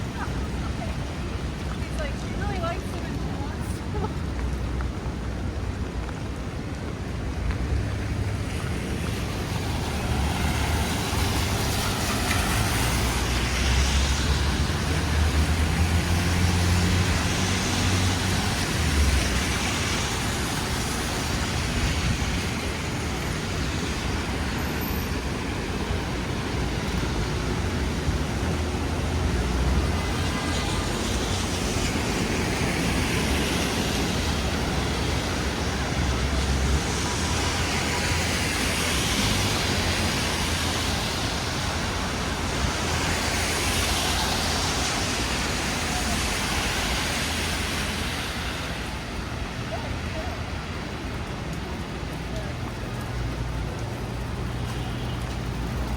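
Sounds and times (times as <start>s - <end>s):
rain: 0.0s - 55.9s
tyres hissing on wet road: 0.0s - 55.9s
vehicles passing: 0.0s - 55.9s.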